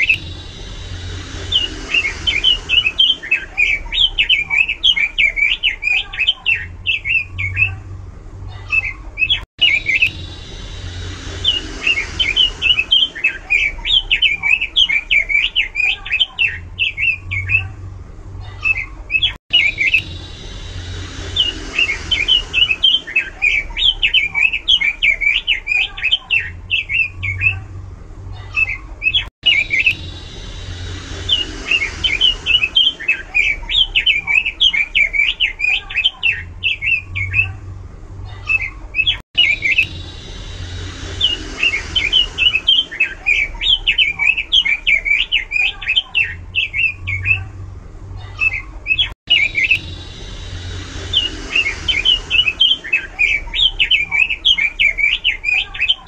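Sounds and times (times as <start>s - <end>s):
bird singing high sharp notes: 9.3s - 17.6s, 19.2s - 27.5s, 29.2s - 37.4s, 39.0s - 47.4s, 49.0s - 56.0s.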